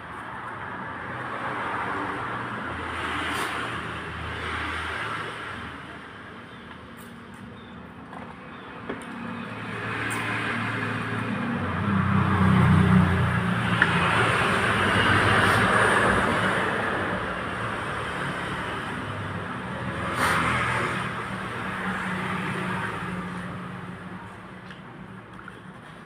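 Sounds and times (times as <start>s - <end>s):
road noise: 0.0s - 26.0s
vehicle engine hum passing: 8.5s - 24.3s.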